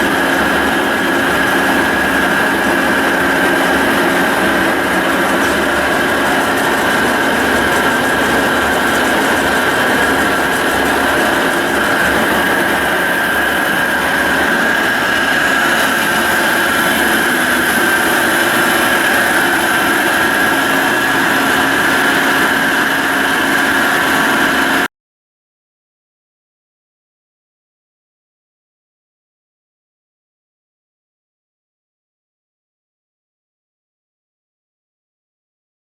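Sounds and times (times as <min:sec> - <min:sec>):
drill press motor whine: 0:00.0 - 0:24.9.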